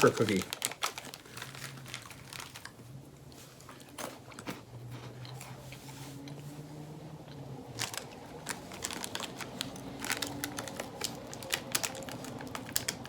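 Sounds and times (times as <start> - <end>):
plastic wrapper crinkling: 0.0 - 2.9, 7.7 - 13.0.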